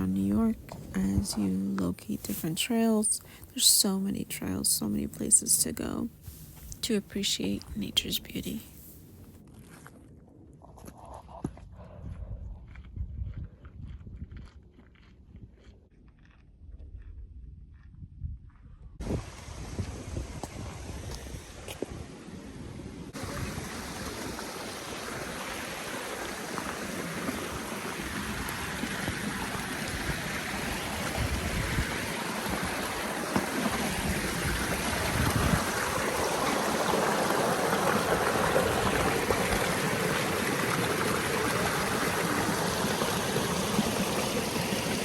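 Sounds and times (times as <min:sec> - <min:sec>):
stream water rushing: 0:23.2 - 0:45.0.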